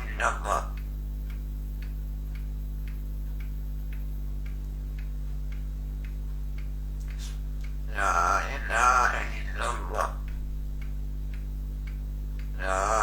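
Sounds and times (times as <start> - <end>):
talking parrot: 0.0 - 0.8, 7.9 - 10.4, 12.6 - 13.0
clock ticking: 0.0 - 13.0
low electrical hum: 0.0 - 13.0.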